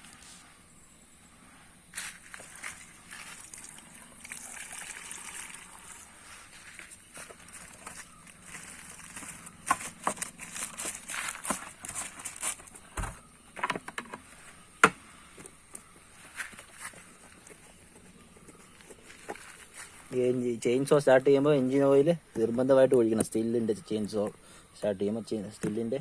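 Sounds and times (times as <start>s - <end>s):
clicks and knocks of objects handled: 9.1s - 14.2s.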